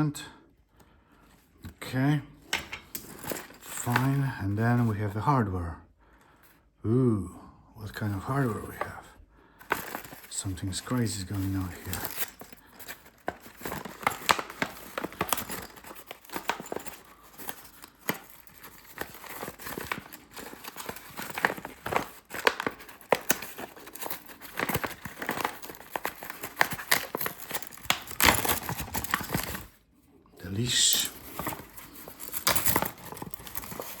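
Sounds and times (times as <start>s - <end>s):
plastic packaging crinkling and tearing: 2.9s - 4.3s, 9.6s - 29.8s, 30.4s - 34.0s.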